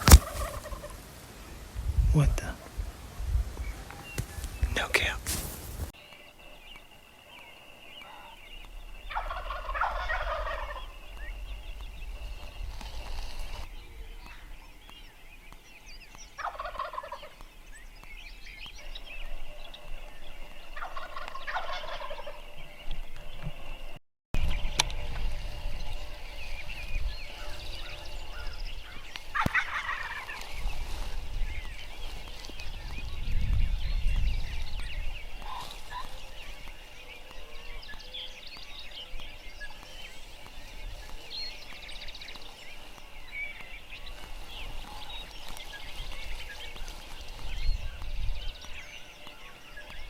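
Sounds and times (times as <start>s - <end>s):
turkey gobbling: 0.0s - 1.3s, 9.1s - 10.9s, 16.4s - 17.4s, 20.8s - 22.4s, 29.4s - 30.5s
small birds chirping: 0.0s - 50.0s.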